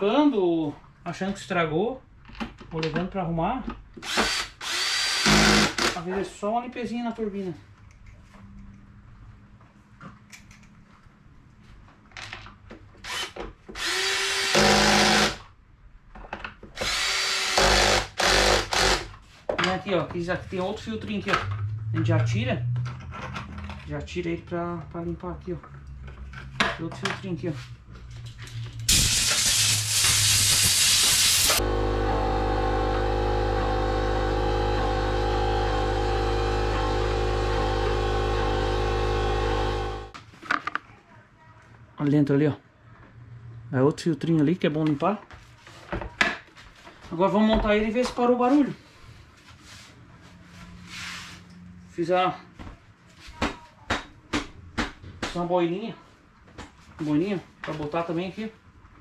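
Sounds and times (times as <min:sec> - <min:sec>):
power drill running: 0:04.0 - 0:06.0, 0:13.0 - 0:15.4, 0:16.8 - 0:19.1, 0:28.9 - 0:40.2
compressed air hiss: 0:28.9 - 0:31.6
motor hum with whine: 0:31.5 - 0:40.2.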